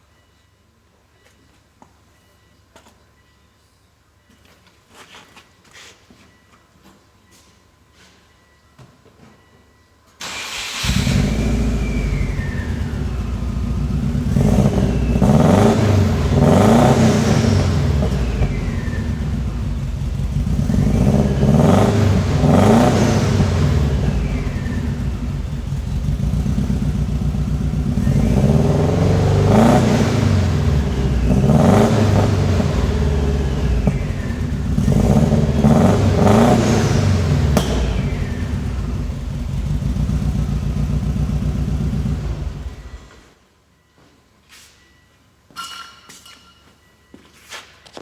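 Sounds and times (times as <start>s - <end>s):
car engine revving: 10.2s - 43.2s
engine pop: 33.8s - 43.1s.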